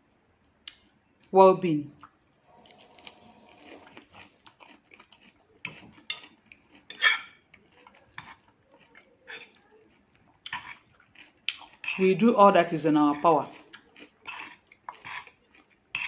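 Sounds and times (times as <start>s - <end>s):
crunching raw vegetables: 2.0s - 12.1s, 13.1s - 16.0s
cutlery clinking on a plate: 6.9s - 7.4s, 9.3s - 9.6s.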